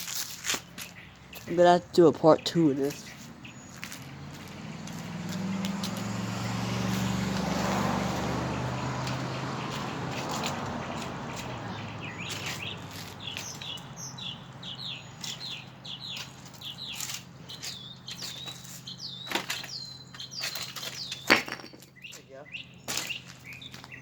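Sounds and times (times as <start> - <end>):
small bird chirping: 0.5 - 6.1, 6.8 - 24.0
sharp knocks: 21.3 - 21.9.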